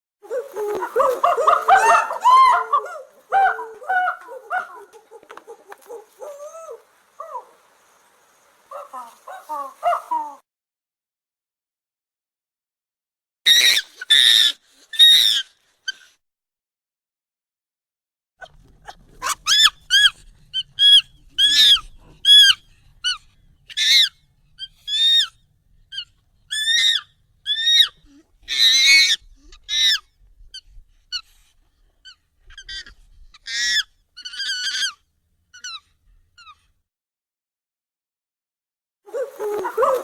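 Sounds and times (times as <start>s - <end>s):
high squeaky monkey calls: 13.5s - 16.1s, 18.8s - 31.3s, 32.0s - 36.6s.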